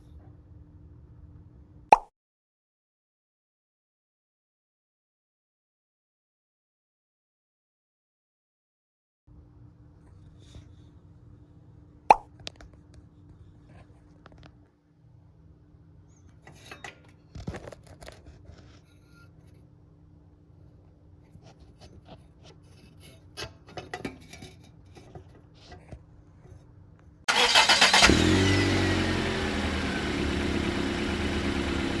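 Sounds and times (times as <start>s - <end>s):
engine cranking and idling: 27.3s - 32.0s.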